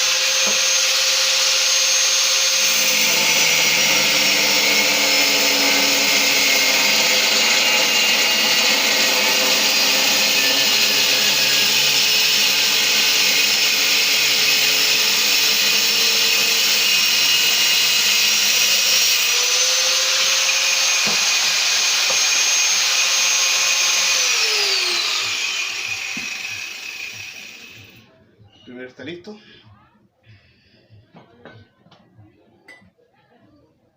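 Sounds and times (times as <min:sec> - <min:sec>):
angle grinder cutting with whine: 0:00.0 - 0:28.0.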